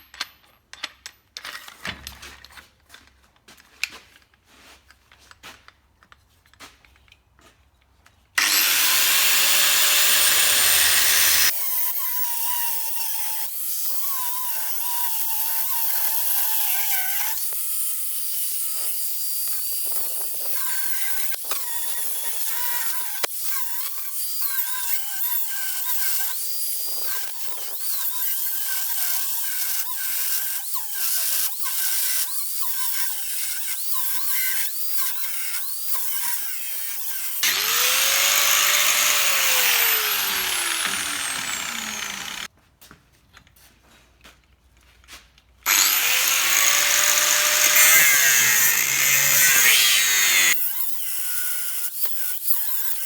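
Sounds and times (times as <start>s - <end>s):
power tool motor whine: 8.4s - 13.4s, 37.4s - 42.5s, 45.7s - 50.6s.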